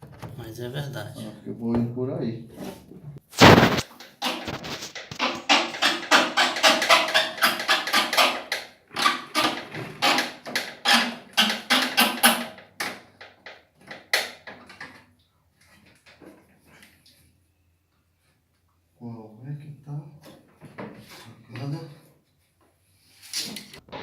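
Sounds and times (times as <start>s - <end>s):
tools knocking on rusted metal: 5.1s - 8.5s.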